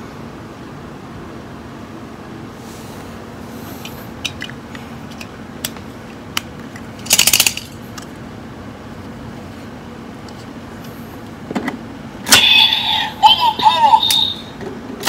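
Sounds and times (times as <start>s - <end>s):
plastic toy pieces clicking: 7.0s - 8.1s.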